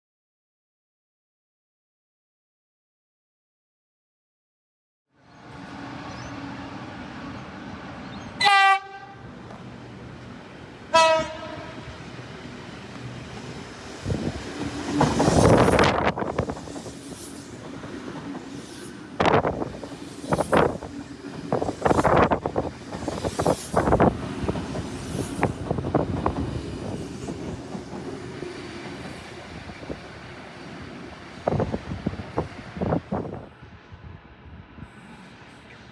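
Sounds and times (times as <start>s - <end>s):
train rattling past: 5.2s - 35.9s
train horn blasts: 8.4s - 9.3s, 10.9s - 12.0s.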